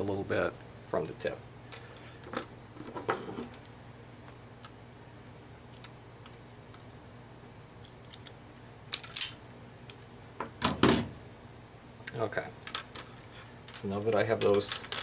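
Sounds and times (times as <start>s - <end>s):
steady low hum: 0.0s - 15.0s
wire being handled: 1.7s - 3.7s, 12.1s - 15.0s.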